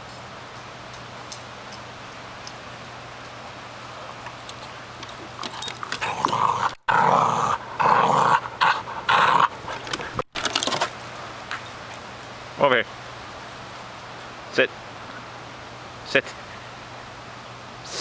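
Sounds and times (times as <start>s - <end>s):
dog snarling and growling: 5.4s - 10.2s.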